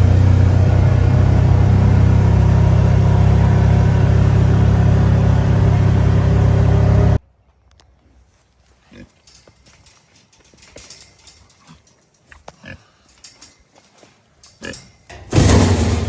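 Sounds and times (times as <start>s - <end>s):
vehicle engine running: 0.0s - 7.2s, 15.3s - 16.0s.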